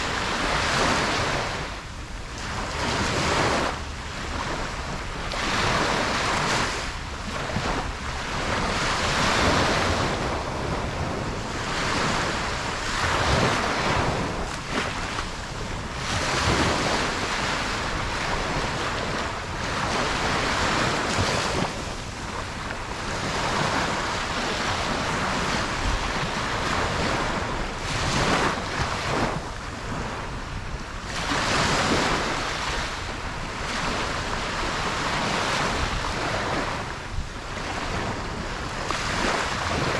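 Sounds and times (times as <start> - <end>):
ocean surf washing up beach: 0.0 - 39.9.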